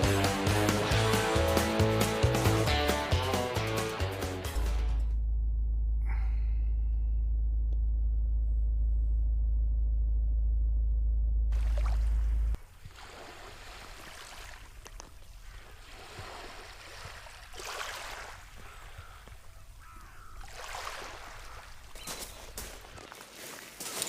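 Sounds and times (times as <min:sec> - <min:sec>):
waves lapping on shore: 0:11.6 - 0:24.0
faint bird calls: 0:15.2 - 0:16.8, 0:18.4 - 0:23.1.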